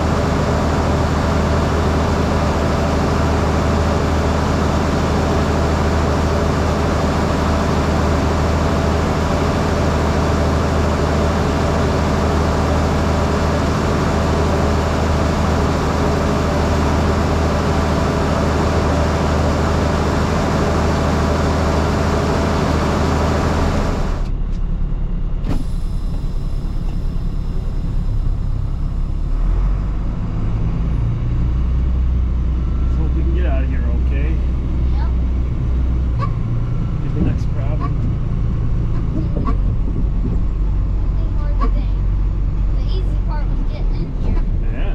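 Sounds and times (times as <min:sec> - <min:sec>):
road noise rush: 0:00.0 - 0:44.9
truck engine hum: 0:00.0 - 0:44.9.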